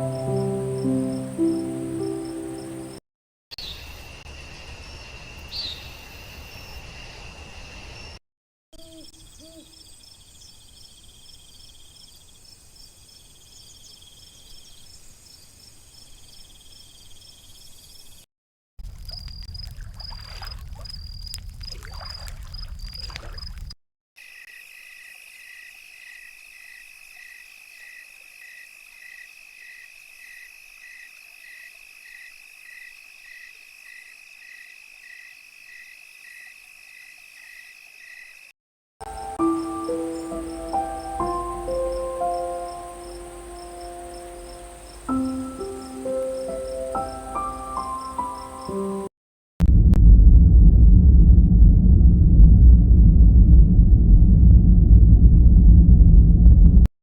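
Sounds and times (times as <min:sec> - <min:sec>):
crickets chirping: 0:00.0 - 0:03.0, 0:03.6 - 0:08.2, 0:18.9 - 0:38.5, 0:39.1 - 0:49.1
frogs: 0:18.9 - 0:38.5, 0:39.1 - 0:49.1
loud low rumble: 0:49.6 - 0:56.9.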